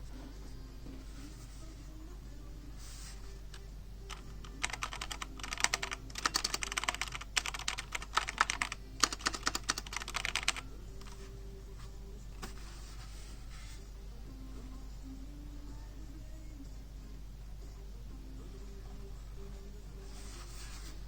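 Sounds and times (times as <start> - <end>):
mechanical keyboard typing: 4.1 - 11.2.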